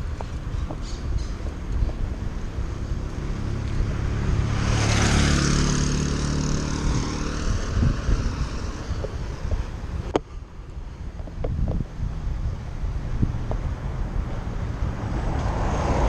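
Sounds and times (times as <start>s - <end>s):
vehicle passing by: 0.0s - 10.1s, 11.9s - 16.0s
wind rumble on microphone: 0.0s - 16.0s.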